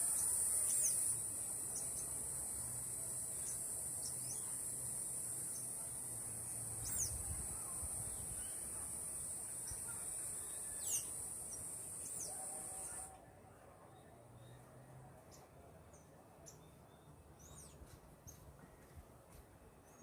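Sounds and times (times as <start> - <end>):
high-pitched insect drone: 7.9 - 13.1.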